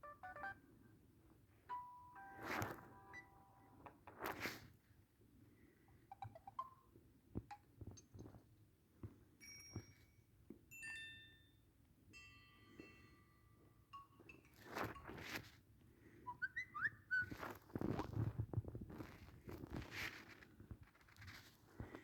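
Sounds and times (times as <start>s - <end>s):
phone notification tones: 0.0s - 0.6s, 1.7s - 3.9s.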